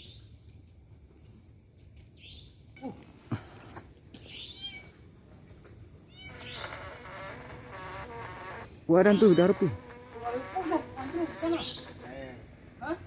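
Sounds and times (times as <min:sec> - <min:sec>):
high-pitched insect drone: 0:06.0 - 0:13.0
falling animal cries: 0:06.1 - 0:12.0
short chirping animal calls: 0:06.1 - 0:12.0
rising buzzy call: 0:06.3 - 0:12.4.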